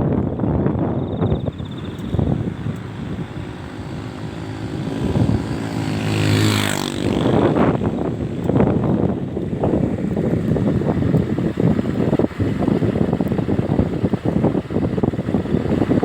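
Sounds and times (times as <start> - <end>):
gusty wind: 0.0 - 16.0
motor passing by: 1.5 - 8.8.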